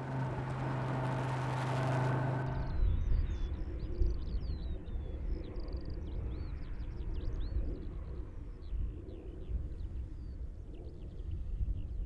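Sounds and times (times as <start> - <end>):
car engine rumbling: 0.0 - 2.9.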